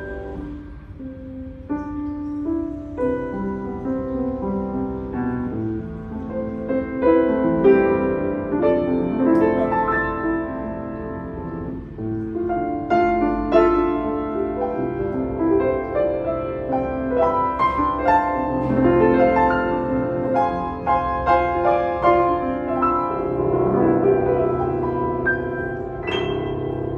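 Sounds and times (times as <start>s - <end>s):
upright piano playing: 0.0s - 26.9s.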